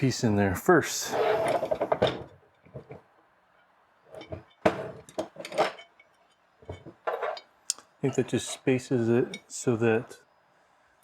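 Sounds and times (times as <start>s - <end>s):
metal parts clinking and knocking: 4.1s - 9.5s.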